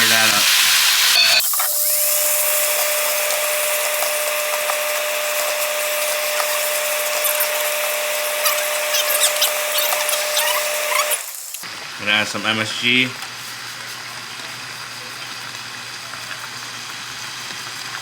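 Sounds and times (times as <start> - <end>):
steady electric hum: 0.0 - 13.2
chicken sizzling in frying pan: 0.0 - 18.0.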